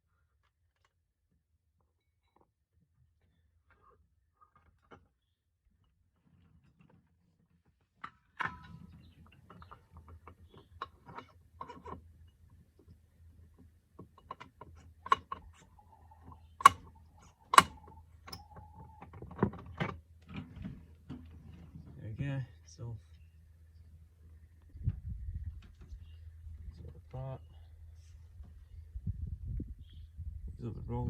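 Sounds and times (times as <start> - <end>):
low steady hum: 8.0 - 31.0.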